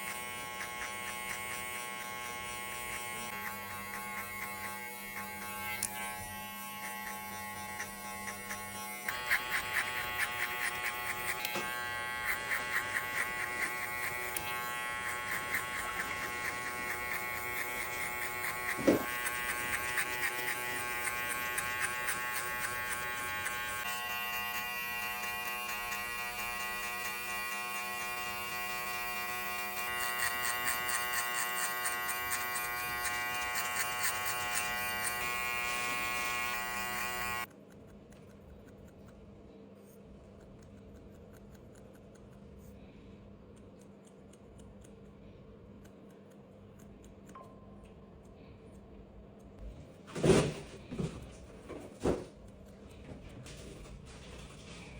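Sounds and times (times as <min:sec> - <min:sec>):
electric hair clippers buzzing: 0:00.0 - 0:37.5.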